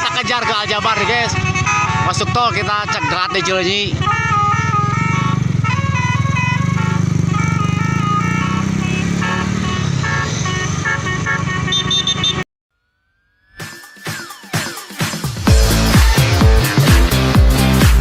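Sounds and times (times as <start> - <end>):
bus air horn playing tune: 0.0 - 12.4.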